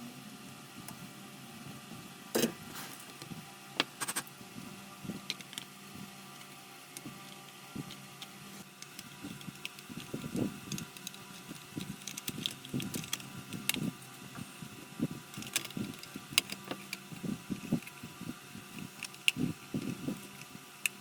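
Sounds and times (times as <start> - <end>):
plastic model parts clicking: 8.8 - 13.8, 15.3 - 17.0.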